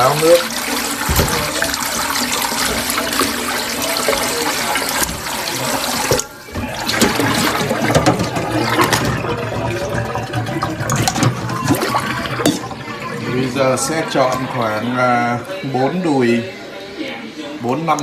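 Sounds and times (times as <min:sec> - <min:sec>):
tap water splashing into sink: 0:00.0 - 0:13.0.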